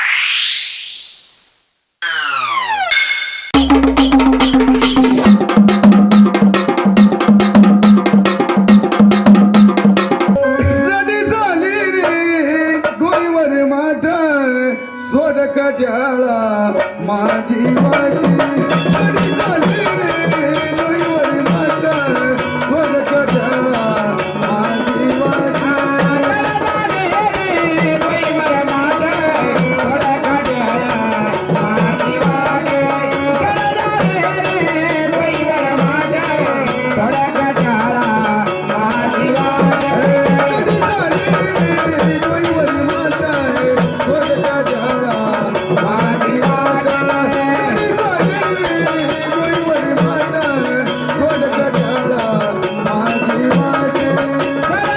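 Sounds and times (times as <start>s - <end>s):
steady drone: 0.0s - 5.5s
gliding melody line: 0.0s - 12.1s
hand drum rhythm: 3.6s - 10.8s, 17.8s - 54.9s.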